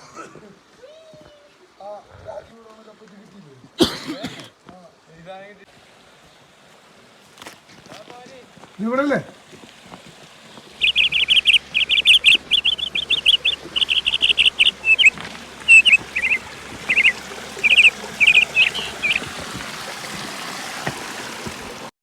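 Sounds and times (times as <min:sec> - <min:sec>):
songbird chirping: 0:10.6 - 0:21.5.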